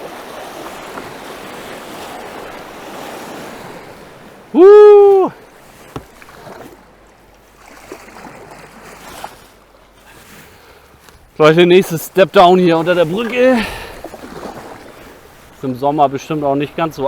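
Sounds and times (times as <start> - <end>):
quiet splashing: 0.0 - 10.1, 10.8 - 16.8
river rapid rushing: 1.8 - 5.5, 11.5 - 15.0
whoop-like voice call: 4.5 - 5.4.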